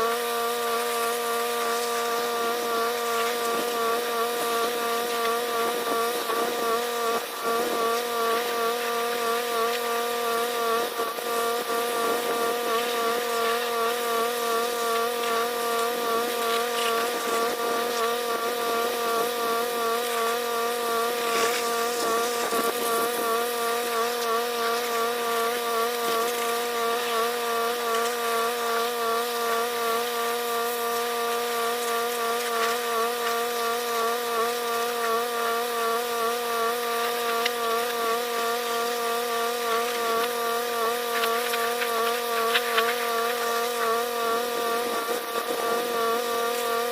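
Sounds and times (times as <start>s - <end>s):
pressure washer engine droning: 0.0s - 34.9s.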